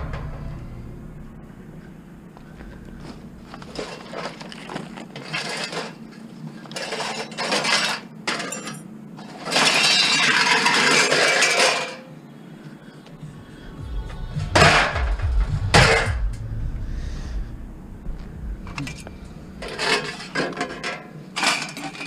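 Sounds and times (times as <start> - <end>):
scrap metal clinking and rattling: 3.4 - 12.0, 18.8 - 22.0.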